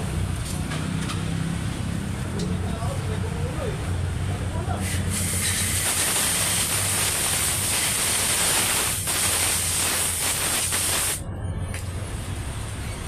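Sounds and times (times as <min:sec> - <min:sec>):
loud steady hiss: 0:04.8 - 0:11.2.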